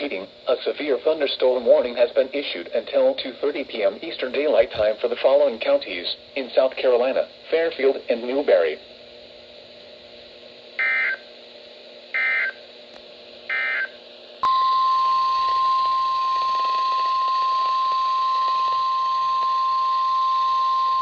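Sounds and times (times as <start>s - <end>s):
digital data tone bursts: 10.8s - 11.2s, 12.2s - 12.6s, 13.5s - 21.0s
steady single-pitch alert tone: 12.2s - 12.6s, 13.5s - 21.0s.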